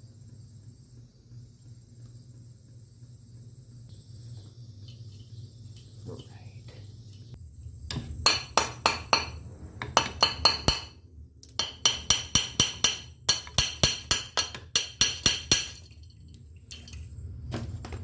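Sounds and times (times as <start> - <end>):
sharp metallic taps on metal: 7.9 - 15.9.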